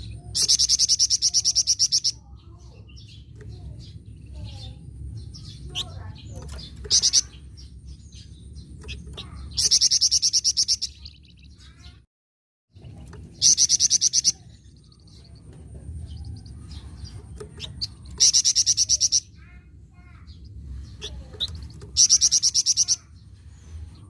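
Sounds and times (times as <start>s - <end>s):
songbird chattering trill: 0.0s - 12.0s, 12.8s - 23.2s
steady low rumble: 2.7s - 9.5s, 12.8s - 24.0s.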